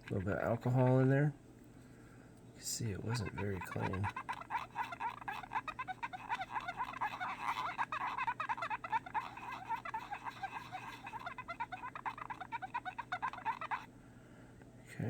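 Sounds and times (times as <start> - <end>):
lens rubbed squeaking: 3.2 - 13.9.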